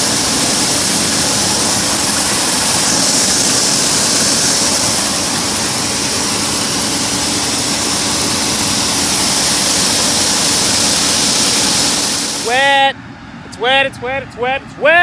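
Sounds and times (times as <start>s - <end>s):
combine harvester running: 0.0s - 15.0s.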